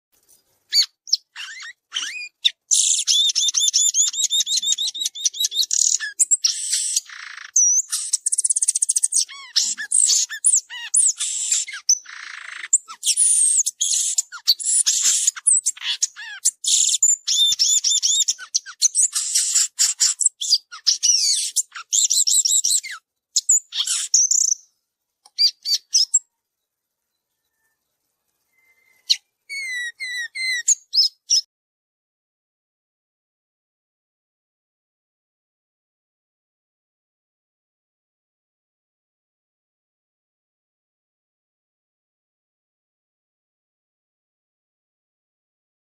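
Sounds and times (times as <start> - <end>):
birds chirping and trilling: 0.3 - 26.4, 27.1 - 31.5.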